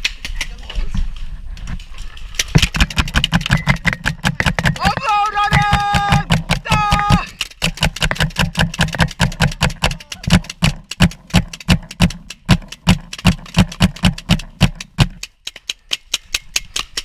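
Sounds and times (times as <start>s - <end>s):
rapid gunfire pops: 2.3s - 15.7s.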